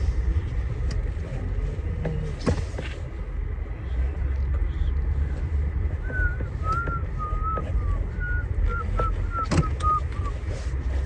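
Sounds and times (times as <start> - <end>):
low vehicle rumble: 0.0 - 11.0
person whistling a tune: 6.0 - 10.3.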